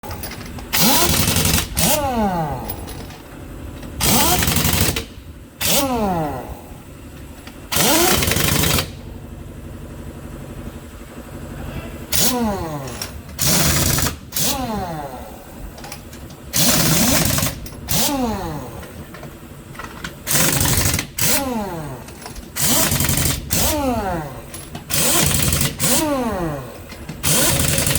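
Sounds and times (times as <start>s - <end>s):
impact wrench hammering: 0.0s - 3.2s, 4.0s - 6.4s, 7.7s - 9.0s, 12.1s - 15.2s, 15.8s - 19.2s, 19.8s - 27.9s.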